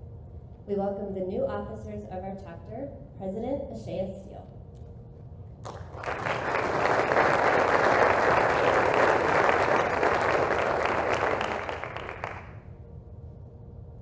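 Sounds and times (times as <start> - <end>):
audience applause: 5.6 - 12.6.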